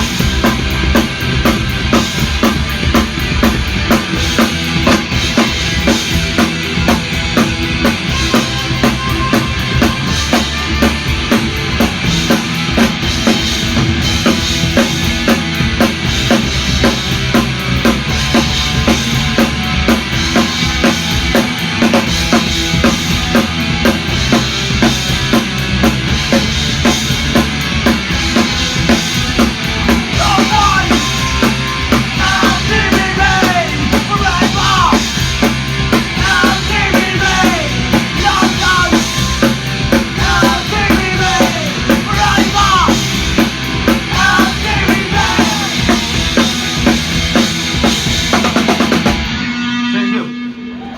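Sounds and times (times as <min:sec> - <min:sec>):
drum kit beat: 0:00.0 - 0:50.9
punk rock band playing: 0:00.0 - 0:50.9.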